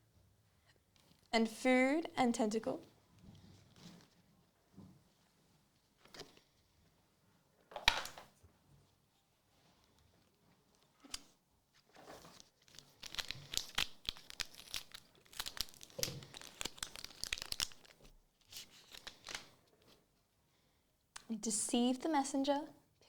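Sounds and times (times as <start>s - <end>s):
foil wrapper tearing and crinkling: 12.6s - 19.4s.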